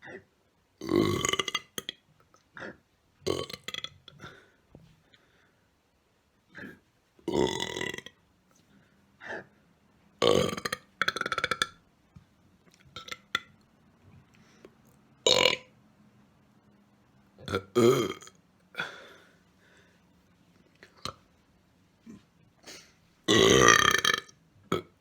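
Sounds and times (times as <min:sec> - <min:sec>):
person burping loudly: 0:00.8 - 0:02.0, 0:02.6 - 0:04.5, 0:06.5 - 0:08.2, 0:10.2 - 0:11.8, 0:15.2 - 0:15.7, 0:17.4 - 0:19.1, 0:23.3 - 0:25.0.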